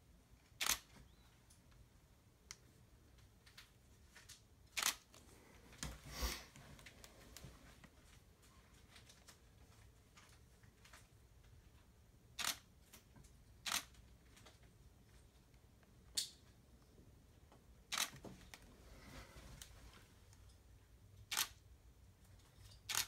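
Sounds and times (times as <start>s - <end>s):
camera shutter clicks: 0.6s - 0.9s, 4.8s - 5.1s, 12.4s - 12.6s, 13.6s - 13.9s, 17.9s - 18.2s, 21.3s - 21.6s.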